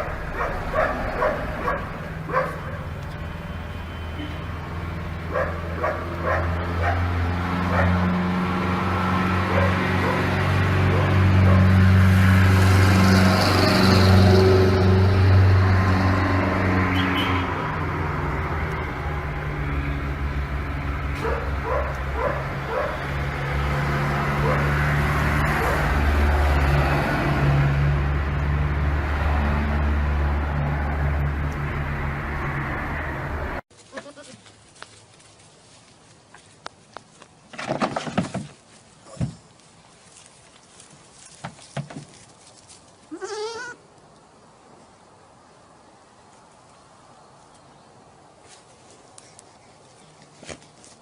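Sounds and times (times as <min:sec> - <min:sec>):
dog yipping: 0:00.4 - 0:02.8, 0:05.3 - 0:07.0
animal bleating: 0:33.9 - 0:34.5, 0:43.1 - 0:43.8.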